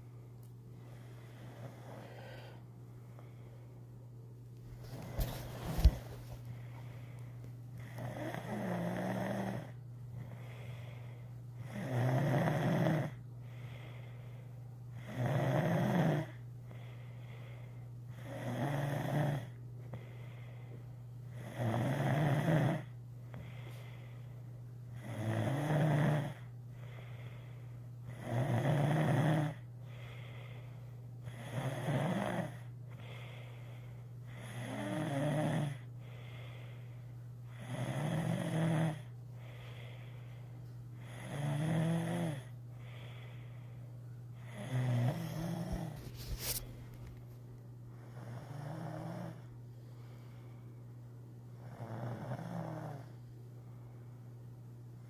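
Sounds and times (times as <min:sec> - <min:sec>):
quiet breaths: 0:00.0 - 0:55.0
steady low hum: 0:00.0 - 0:55.0
loud rasping snore: 0:07.9 - 0:09.8, 0:11.6 - 0:13.2, 0:15.0 - 0:16.4, 0:18.2 - 0:19.6, 0:21.3 - 0:22.9, 0:25.0 - 0:26.5, 0:28.1 - 0:29.6, 0:31.3 - 0:32.7, 0:34.4 - 0:35.8, 0:37.6 - 0:39.1, 0:41.1 - 0:42.5, 0:44.5 - 0:46.0, 0:51.6 - 0:53.1.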